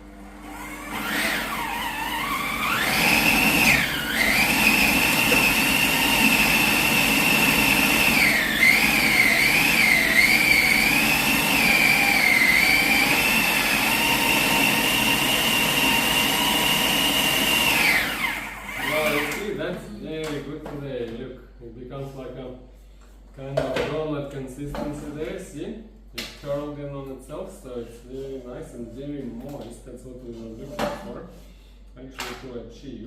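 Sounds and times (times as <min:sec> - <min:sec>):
blender motor whining: 0:00.2 - 0:19.6.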